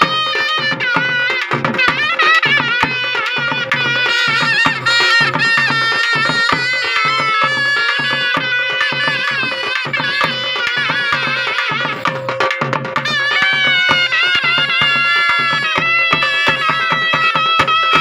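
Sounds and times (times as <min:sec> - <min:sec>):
hand drum beat: 0:00.0 - 0:18.0
wavering ornamented melody: 0:03.0 - 0:12.5.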